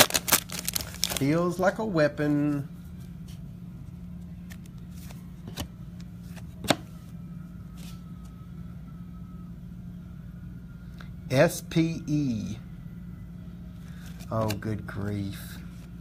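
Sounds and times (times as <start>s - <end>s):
low room hum: 0.0s - 16.0s
cards clicking and tapping: 14.2s - 14.7s.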